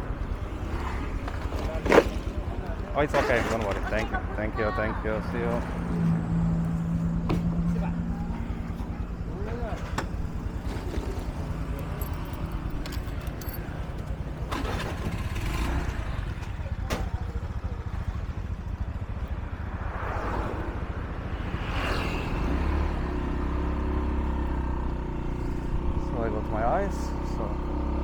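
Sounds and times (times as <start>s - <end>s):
road and wind noise: 0.0s - 28.0s
motorbike engine running: 5.6s - 20.1s, 22.6s - 28.0s.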